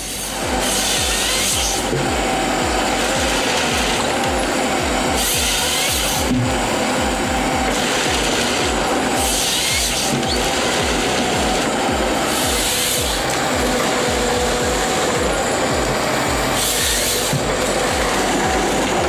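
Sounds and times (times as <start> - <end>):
music with pounding beat: 0.0 - 19.0
timber harvester sawing logs: 0.0 - 19.0.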